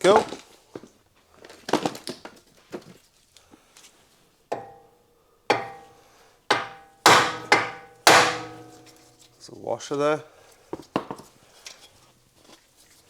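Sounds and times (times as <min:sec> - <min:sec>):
hammer striking steel: 0:04.5 - 0:04.9, 0:05.5 - 0:09.1.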